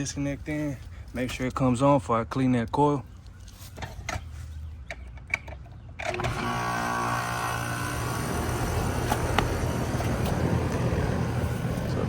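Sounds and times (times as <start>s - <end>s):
air conditioner unit humming: 6.3s - 12.0s.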